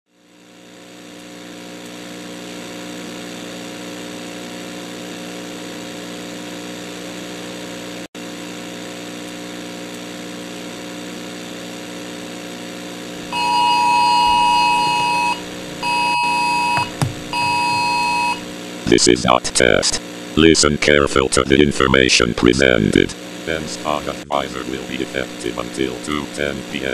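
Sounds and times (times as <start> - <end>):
low electronic hum: 12.7 - 26.9
two-pitch alert tone: 13.3 - 18.4.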